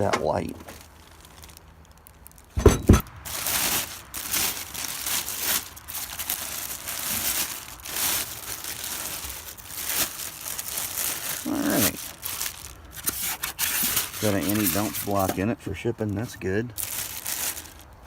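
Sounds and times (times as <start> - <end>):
plastic packaging crinkling: 0.0 - 18.0
heavy knocks: 2.6 - 3.1.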